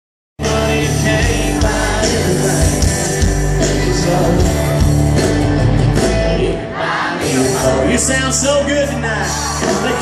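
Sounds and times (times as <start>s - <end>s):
steady drum beat: 0.4s - 6.5s, 9.5s - 10.0s
live country band: 0.4s - 10.0s.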